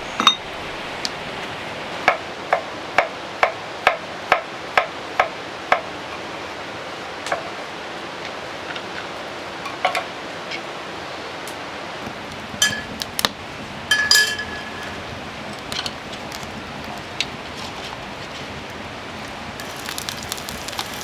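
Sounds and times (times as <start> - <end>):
rain hissing: 0.0 - 2.9, 10.8 - 21.0
cookware clinking: 0.1 - 0.5, 12.6 - 13.0, 13.9 - 15.9.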